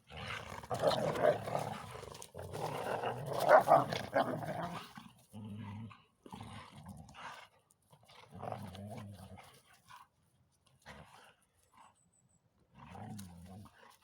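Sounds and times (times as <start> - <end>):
dog growling: 0.1 - 6.8.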